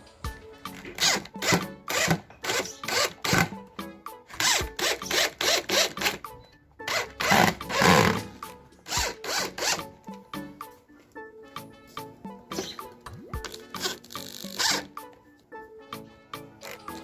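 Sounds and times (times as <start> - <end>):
background music: 0.0 - 17.0
hand tool rasping strokes: 0.7 - 3.6, 4.3 - 6.3, 6.9 - 9.9, 13.5 - 15.0.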